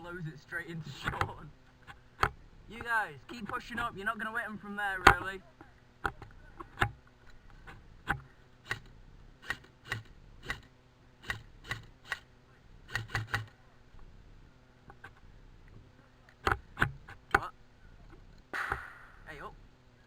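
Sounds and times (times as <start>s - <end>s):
airsoft rifle shots: 18.5s - 19.3s.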